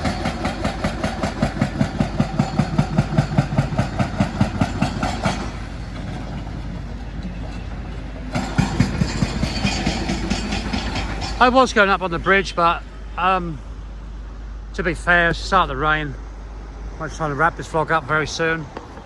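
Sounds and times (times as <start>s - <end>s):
diesel machinery running: 0.0s - 19.0s
rhythmic machine clatter: 8.3s - 11.6s.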